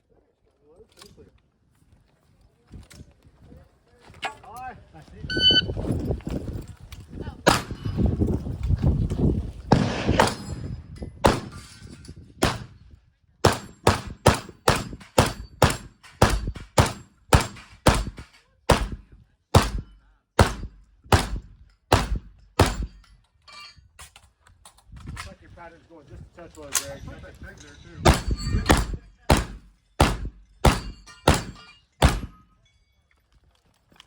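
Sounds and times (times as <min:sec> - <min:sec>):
shotgun shots: 0:07.5 - 0:07.9, 0:09.7 - 0:11.6, 0:12.4 - 0:12.8, 0:13.4 - 0:23.0, 0:28.1 - 0:32.4.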